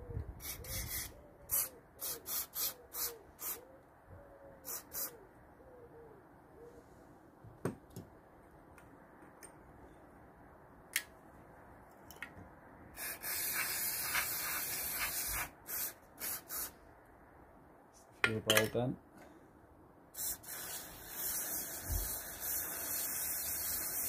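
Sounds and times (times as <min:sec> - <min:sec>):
spray hissing from a nozzle: 0:00.4 - 0:03.6, 0:04.6 - 0:05.1, 0:13.0 - 0:16.7, 0:20.2 - 0:24.0.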